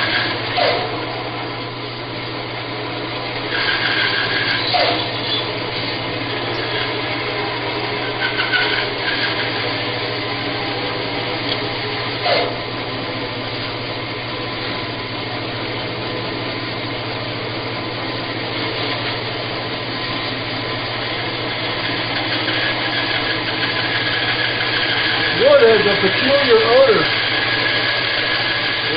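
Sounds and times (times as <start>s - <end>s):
bandsaw blade cutting wood: 0.0s - 0.9s, 3.5s - 6.0s, 8.0s - 9.8s, 12.2s - 12.6s, 21.2s - 28.9s
bandsaw motor hum: 0.0s - 28.9s
brief squeaks: 4.6s - 5.5s.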